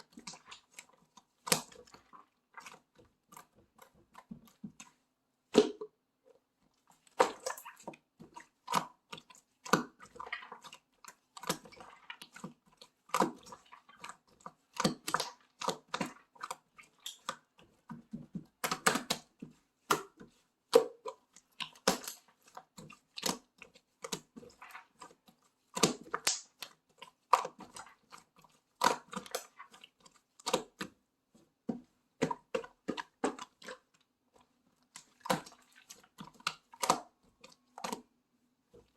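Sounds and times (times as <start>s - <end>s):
slime squishing: 0.0s - 38.9s
sticky clicks and crackling pops: 25.8s - 26.5s.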